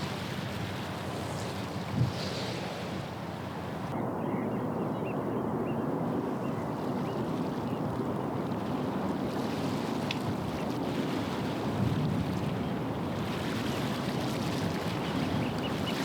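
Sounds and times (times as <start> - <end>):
water noise: 0.0 - 4.0
wind noise: 0.0 - 4.0.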